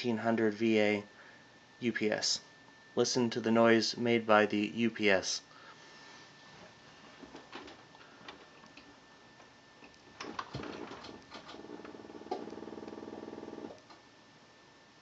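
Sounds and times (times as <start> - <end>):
fast pulsing buzzing hum: 8.9 - 14.0.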